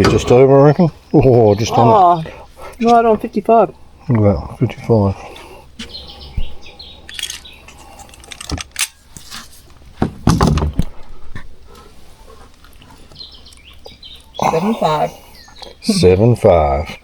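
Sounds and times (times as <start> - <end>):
fishing gear clinking and knocking: 7.1 - 9.0.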